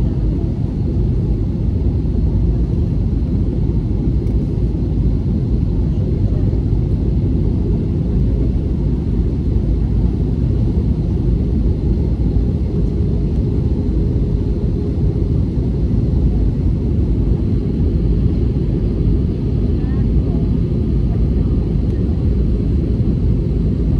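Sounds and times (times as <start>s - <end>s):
airliner cabin engine rumble: 0.0s - 23.9s.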